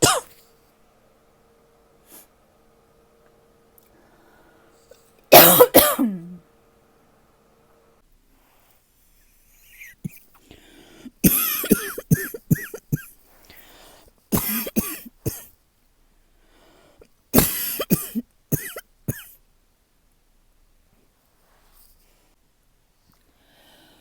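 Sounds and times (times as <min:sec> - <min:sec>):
person coughing: 0:00.0 - 0:00.4, 0:05.3 - 0:06.4, 0:11.2 - 0:13.2, 0:14.3 - 0:15.5, 0:17.4 - 0:19.4.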